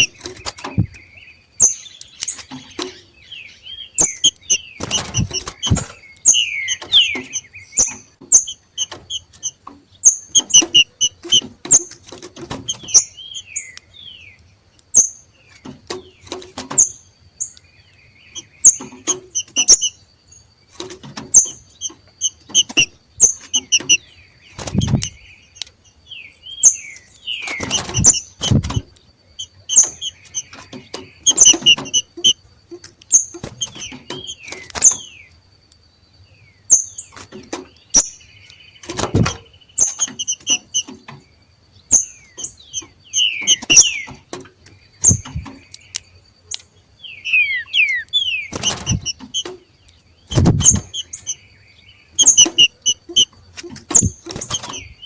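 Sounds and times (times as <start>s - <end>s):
loud thumps: 0.0s - 1.0s, 4.0s - 6.0s, 24.6s - 25.2s, 27.6s - 28.9s, 38.9s - 39.5s, 48.5s - 49.4s, 50.3s - 51.3s
bird chirping calls: 0.0s - 55.0s.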